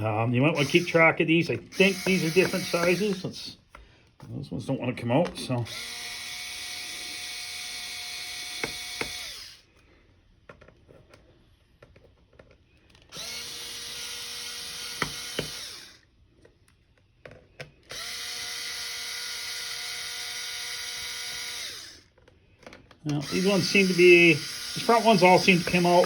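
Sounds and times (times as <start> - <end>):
electric screwdriver whirring: 0.6 - 3.5, 5.6 - 9.7, 13.0 - 16.1, 17.8 - 22.2, 23.1 - 26.0.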